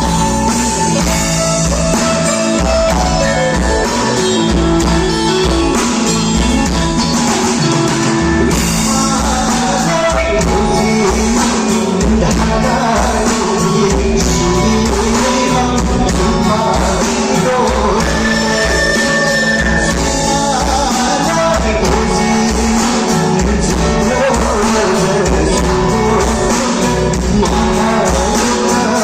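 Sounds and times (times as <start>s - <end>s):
rock band playing live: 0.0s - 29.0s
person singing: 7.6s - 29.0s.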